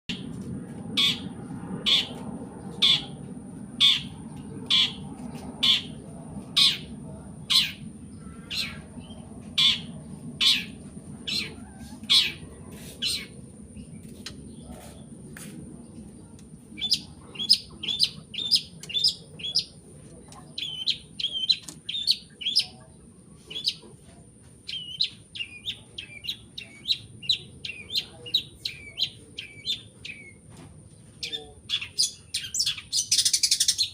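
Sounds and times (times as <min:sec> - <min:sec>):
bird sharp downward calls: 0:01.0 - 0:02.2, 0:02.8 - 0:03.2, 0:03.8 - 0:05.0, 0:07.5 - 0:13.4
bird chattering chirps: 0:03.8 - 0:05.0, 0:07.5 - 0:13.4, 0:16.8 - 0:19.8, 0:20.4 - 0:22.9, 0:23.5 - 0:23.9, 0:24.7 - 0:30.4, 0:31.2 - 0:33.9.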